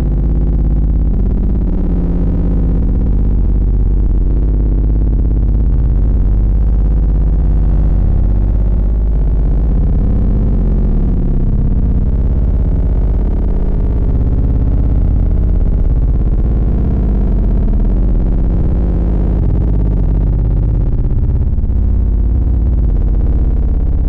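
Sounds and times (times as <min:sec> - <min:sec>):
deep synthesized bass: 0:00.0 - 0:24.0.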